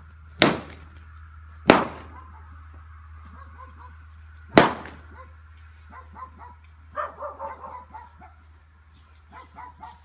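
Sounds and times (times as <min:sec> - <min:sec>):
small dog yapping: 0:05.9 - 0:08.4, 0:09.3 - 0:10.0.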